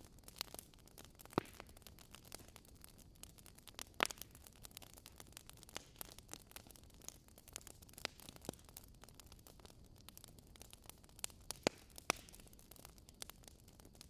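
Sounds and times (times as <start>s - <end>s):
fire popping: 0.0s - 14.0s
wood fire crackling: 0.0s - 14.0s.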